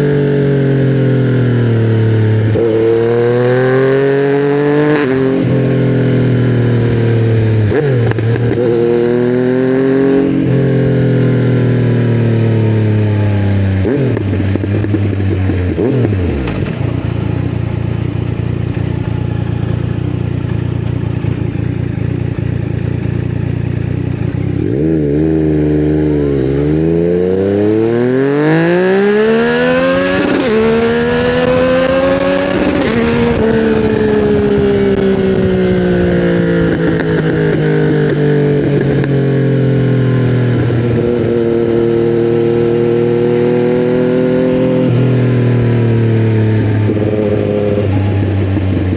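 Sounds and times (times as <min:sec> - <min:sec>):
motorcycle engine revving: 0:00.0 - 0:48.9.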